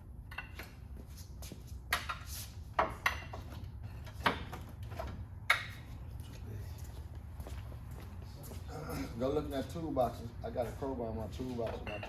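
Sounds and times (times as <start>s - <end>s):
metal tools knocking and clanking: 11.6s - 12.0s.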